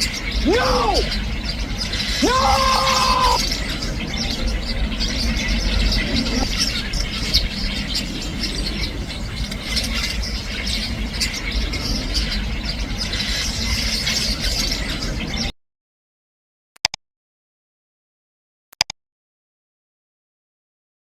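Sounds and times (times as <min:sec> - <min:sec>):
sparrows chirping: 0:00.0 - 0:15.5.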